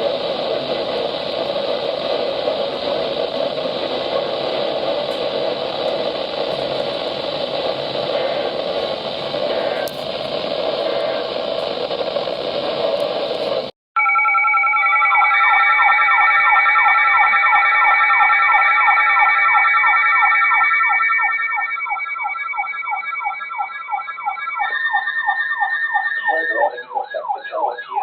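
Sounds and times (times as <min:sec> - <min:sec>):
radio static hiss: 0:00.0 - 0:13.7, 0:26.2 - 0:28.0.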